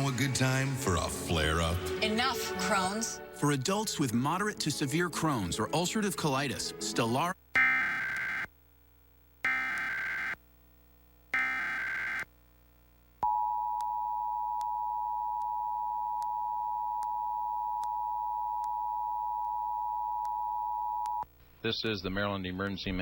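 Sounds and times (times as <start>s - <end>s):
data bursts: 7.6s - 8.5s, 9.4s - 10.4s, 11.4s - 12.3s
two-tone attention signal: 11.4s - 12.2s.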